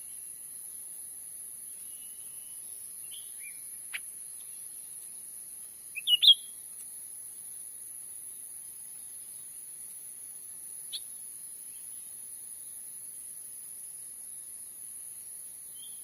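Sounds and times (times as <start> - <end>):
insect hiss: 0.0 - 16.0
bird whistling and chirping: 5.9 - 6.5.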